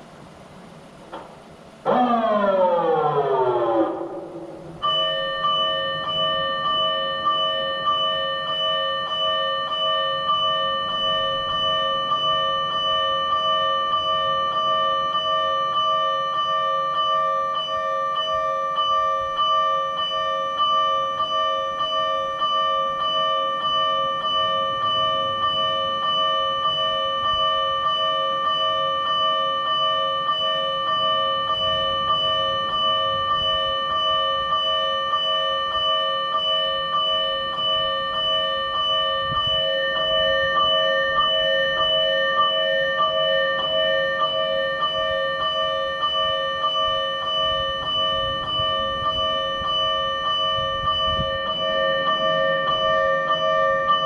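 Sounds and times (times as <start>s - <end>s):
electronic warning bell clanging: 1.9s - 54.0s.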